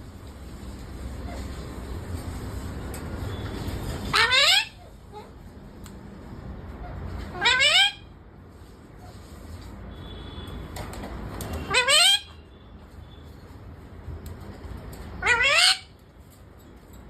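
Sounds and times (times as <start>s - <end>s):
parrot squawking: 4.0s - 5.3s, 6.8s - 8.1s, 11.7s - 12.4s, 15.2s - 16.0s.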